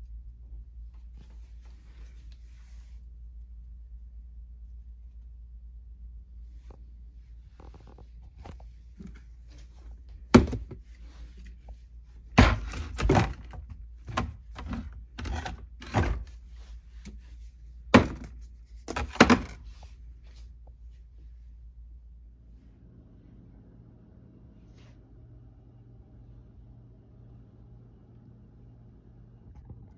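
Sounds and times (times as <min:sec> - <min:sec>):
items knocking on shelves: 0:10.2 - 0:11.0, 0:12.3 - 0:16.4, 0:17.9 - 0:19.8.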